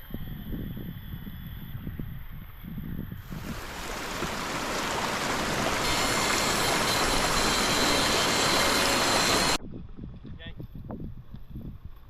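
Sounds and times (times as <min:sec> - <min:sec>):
rushing water: 0:03.3 - 0:09.6.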